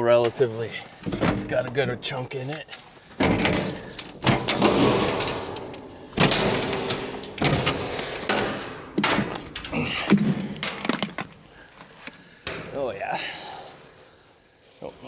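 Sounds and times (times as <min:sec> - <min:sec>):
steel bin thumping and rattling: 0:00.2 - 0:11.7, 0:12.4 - 0:12.9.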